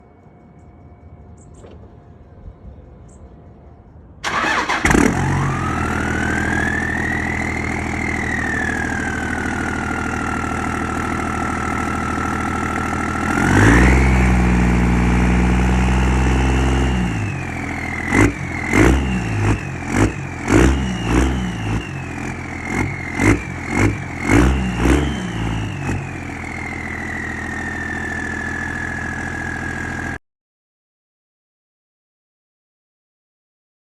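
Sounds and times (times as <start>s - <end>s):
diesel engine revving: 4.2s - 30.2s.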